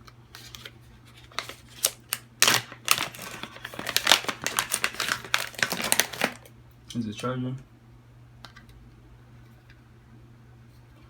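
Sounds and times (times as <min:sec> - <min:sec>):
packaging crinkling: 0:00.4 - 0:06.5
packaging clicks: 0:01.3 - 0:06.5.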